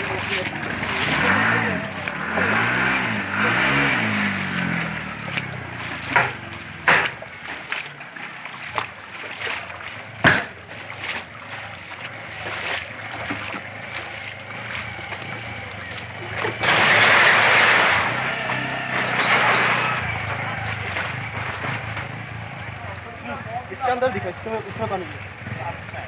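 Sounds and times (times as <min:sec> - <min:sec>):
water splashing and hissing: 0:00.0 - 0:23.4
vehicle engine revving: 0:00.0 - 0:26.0
sharp knocks or thuds: 0:06.1 - 0:07.3, 0:10.2 - 0:10.6.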